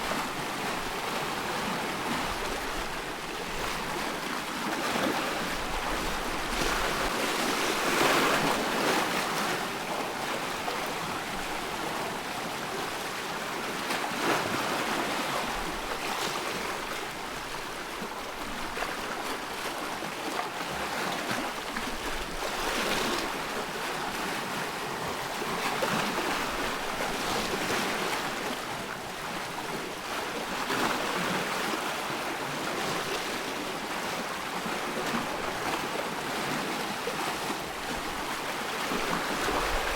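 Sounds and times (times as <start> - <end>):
small waves lapping and splashing: 0.0 - 39.9
wind: 0.0 - 39.9.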